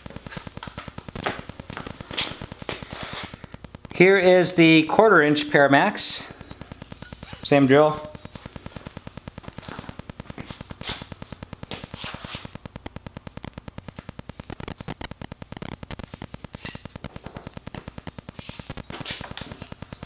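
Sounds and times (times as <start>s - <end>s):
steady rapid clicking: 6.2s - 18.9s.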